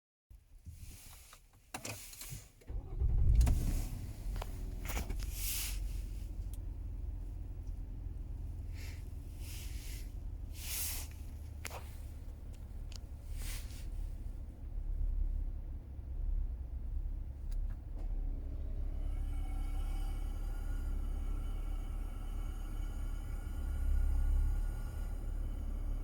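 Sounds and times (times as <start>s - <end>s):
car engine starting and idling: 0.6s - 26.0s.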